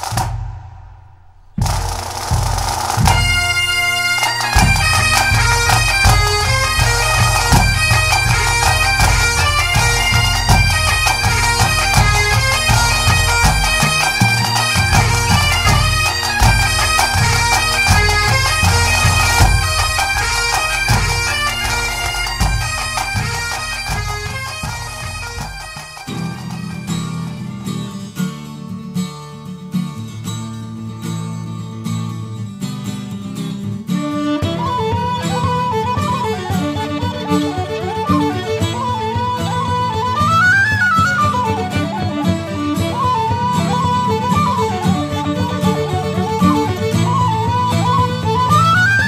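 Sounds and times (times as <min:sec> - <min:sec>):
drum beat: 0:00.0 - 0:27.3
bagpipes playing a tune: 0:01.6 - 0:28.1, 0:34.0 - 0:49.0.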